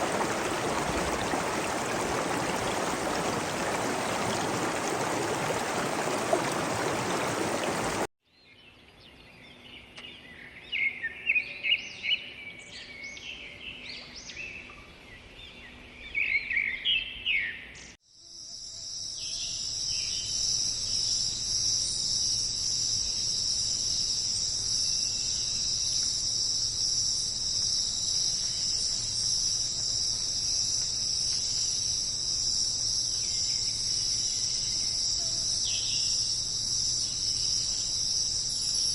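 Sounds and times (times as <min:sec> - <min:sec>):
insects chorus: 0:00.0 - 0:08.1, 0:18.4 - 0:38.9
stream water rushing: 0:00.0 - 0:08.1
quiet forest ambience: 0:00.0 - 0:38.9.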